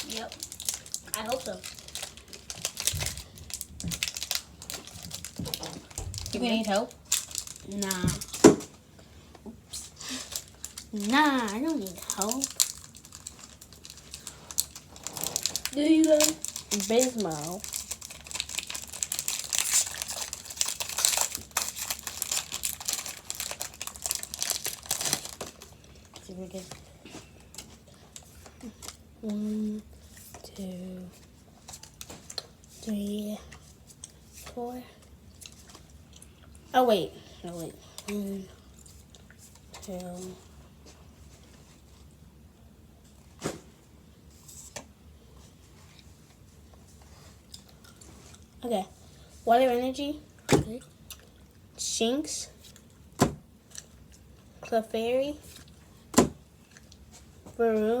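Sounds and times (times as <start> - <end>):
foil wrapper crinkling: 0.0 - 8.6, 9.7 - 29.0, 31.2 - 32.8.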